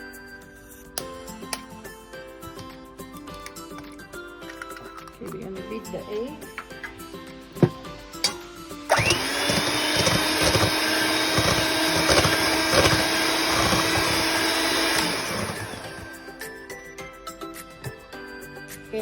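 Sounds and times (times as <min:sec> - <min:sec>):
electric mixer whine: 0:08.9 - 0:16.4.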